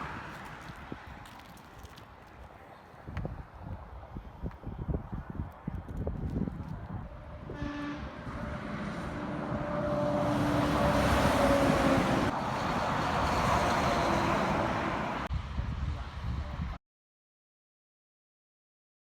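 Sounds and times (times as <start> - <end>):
vehicle passing by: 7.2 - 15.3
vehicle horn blast: 7.5 - 10.2.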